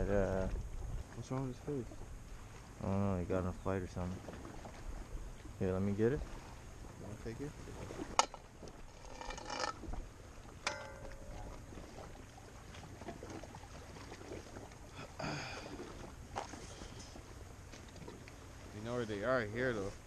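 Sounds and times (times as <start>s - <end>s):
low steady hum: 0.0s - 20.0s
metallic clink: 8.2s - 9.8s, 10.6s - 11.6s.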